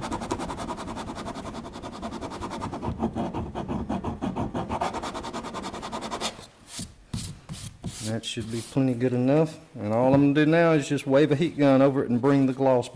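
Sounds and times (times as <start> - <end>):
sanding block rubbing plastic: 0.0 - 8.7.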